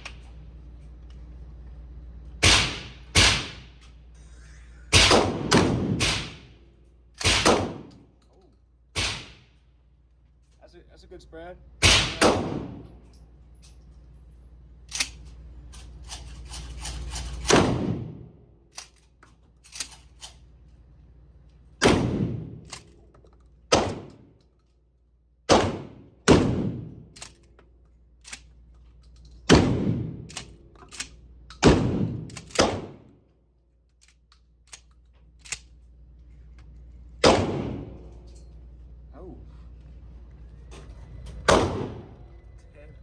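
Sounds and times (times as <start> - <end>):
shotgun shots echoing: 2.4 - 3.6, 4.9 - 6.5, 7.2 - 8.0, 9.0 - 9.5, 11.8 - 12.8, 21.8 - 22.6, 25.5 - 27.0, 31.6 - 33.0, 37.2 - 38.0, 41.5 - 42.2.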